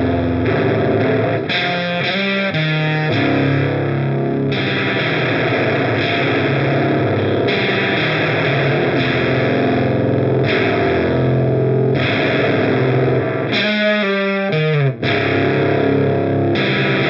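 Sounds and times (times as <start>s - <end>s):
distorted electric guitar: 0.0s - 17.0s.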